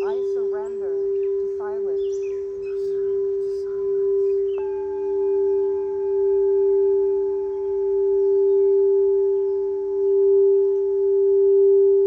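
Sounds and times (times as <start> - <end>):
singing bowls ringing: 0.0 - 12.0.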